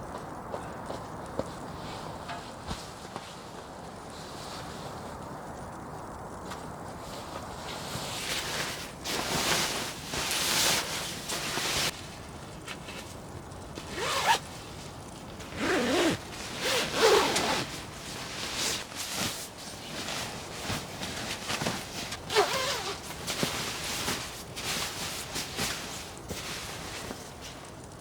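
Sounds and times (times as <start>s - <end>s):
zipper being pulled: 13.9s - 14.4s, 15.5s - 18.8s, 22.2s - 24.2s.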